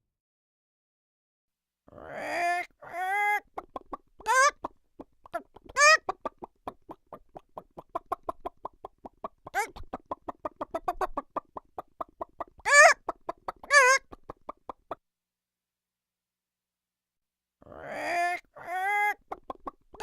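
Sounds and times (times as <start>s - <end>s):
cartoon chicken clucking: 1.9s - 15.0s, 17.6s - 20.0s
warbling chicken squawks: 1.9s - 15.0s, 17.7s - 20.0s.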